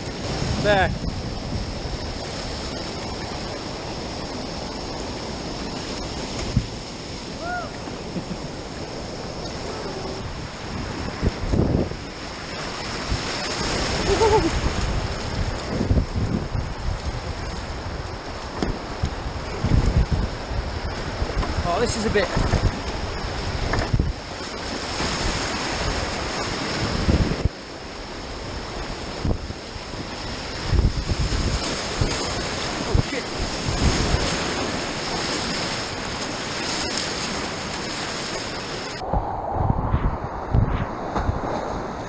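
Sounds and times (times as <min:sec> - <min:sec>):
rushing river water: 0:00.0 - 0:39.2
wind buffeting microphone: 0:00.0 - 0:42.0.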